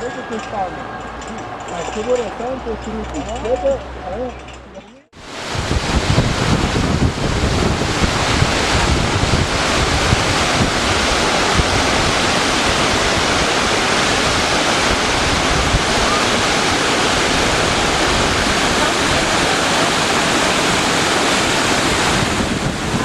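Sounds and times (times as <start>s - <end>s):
waterfall rushing: 5.2s - 23.0s.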